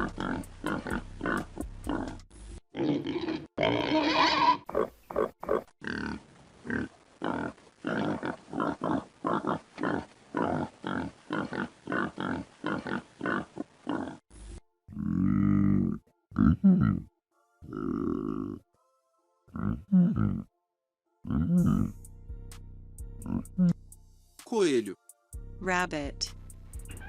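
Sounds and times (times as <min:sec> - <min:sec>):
pig grunting: 0:00.0 - 0:14.2, 0:14.9 - 0:18.6, 0:19.5 - 0:20.5, 0:21.2 - 0:21.9, 0:23.2 - 0:23.8.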